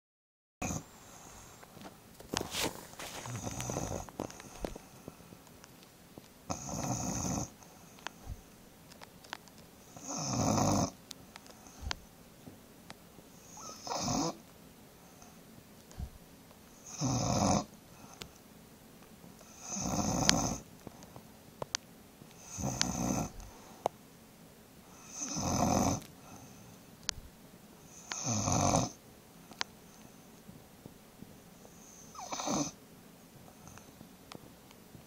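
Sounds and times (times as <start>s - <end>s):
dog snoring: 0.6s - 1.7s, 2.4s - 5.3s, 6.5s - 8.6s, 9.8s - 11.0s, 13.3s - 14.4s, 16.8s - 18.2s, 19.4s - 20.7s, 22.3s - 23.8s, 24.9s - 26.6s, 27.9s - 29.0s, 31.7s - 32.8s.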